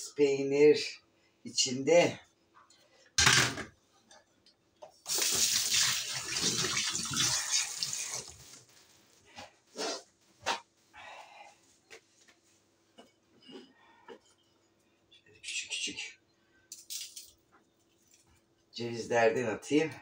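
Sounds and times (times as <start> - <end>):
tap water running into sink: 5.1 - 8.4.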